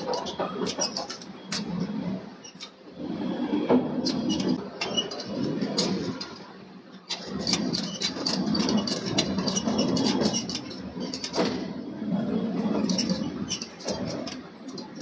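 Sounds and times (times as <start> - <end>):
metallic clanks and knocks: 0.0 - 1.8, 4.1 - 6.4, 12.8 - 15.0
machinery rumbling: 0.0 - 15.0.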